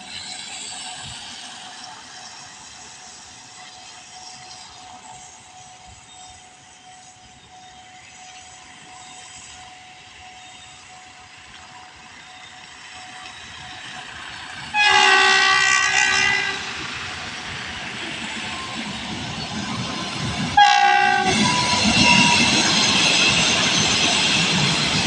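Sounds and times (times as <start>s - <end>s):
locomotive rumbling: 0.0s - 25.0s
train horn blast: 14.7s - 16.9s, 20.6s - 22.5s.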